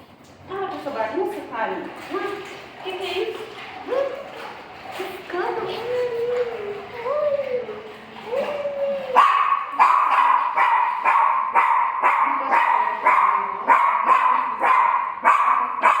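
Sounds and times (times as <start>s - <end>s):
dog barking: 9.2s - 16.0s.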